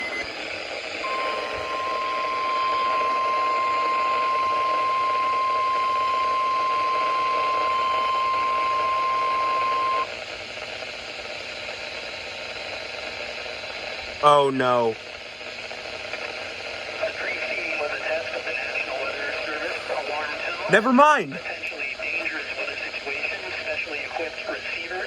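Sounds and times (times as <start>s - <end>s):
radio static: 0.0s - 10.0s, 14.2s - 15.0s, 16.6s - 25.0s
steady high alarm tone: 0.0s - 10.1s, 20.7s - 21.4s.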